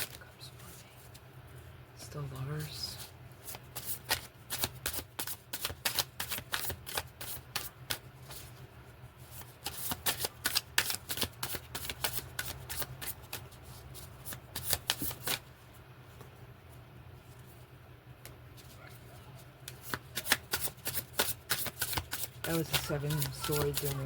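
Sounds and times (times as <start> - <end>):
cards being shuffled: 3.4 - 8.4, 9.4 - 15.4, 19.6 - 24.0.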